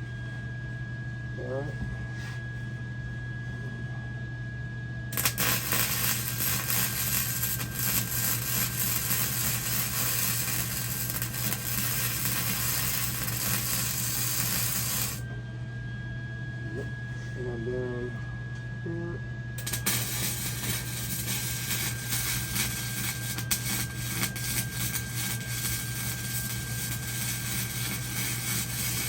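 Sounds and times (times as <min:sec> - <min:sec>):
low hum: 0:00.0 - 0:29.0
welding arc crackling: 0:05.2 - 0:15.2, 0:19.6 - 0:29.0.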